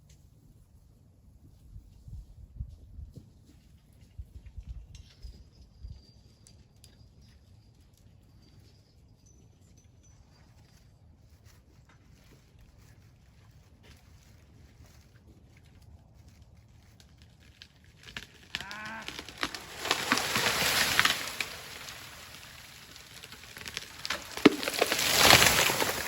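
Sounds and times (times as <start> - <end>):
branches rushing and crashing: 16.4 - 26.0
sharp wood crack: 17.3 - 26.0
tree hinge wood creaking: 17.6 - 26.0.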